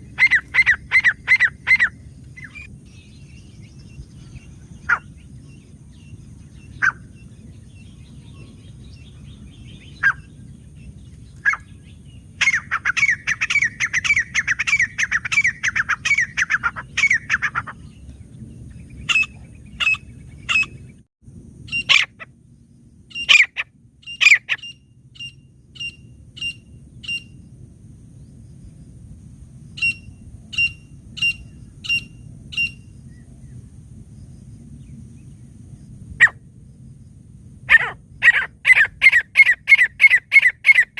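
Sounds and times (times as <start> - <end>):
francolin calling: 0.0 - 18.0, 18.9 - 20.9, 21.7 - 22.3, 23.1 - 27.4, 29.8 - 33.2, 37.7 - 40.9
faint low hum: 0.0 - 40.8.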